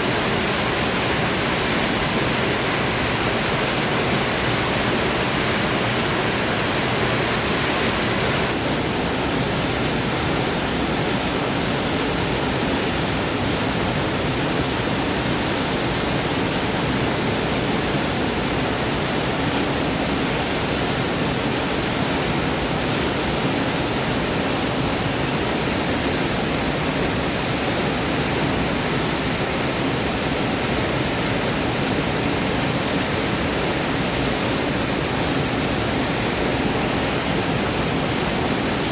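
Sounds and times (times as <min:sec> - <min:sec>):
waterfall rushing: 0:00.0 - 0:08.6.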